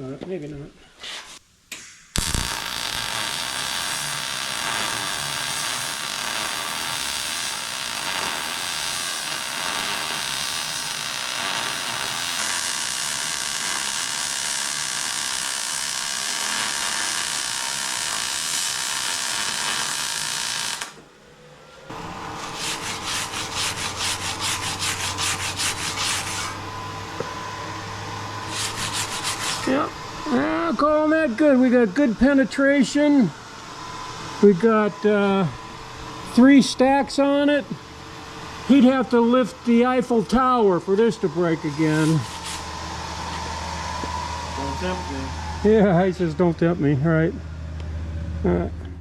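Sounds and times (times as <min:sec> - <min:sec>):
welder arc frying: 0:02.1 - 0:21.1, 0:21.9 - 0:36.6
low hum: 0:21.2 - 0:36.5, 0:37.2 - 0:49.0.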